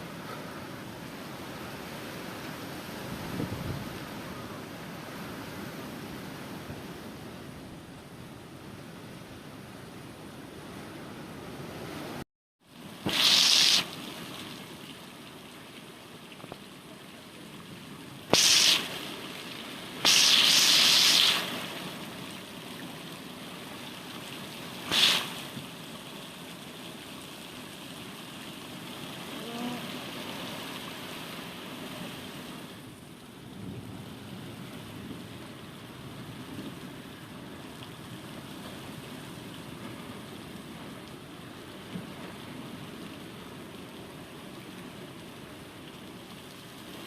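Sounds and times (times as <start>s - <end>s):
loud wind gusts: 1.5s - 8.0s.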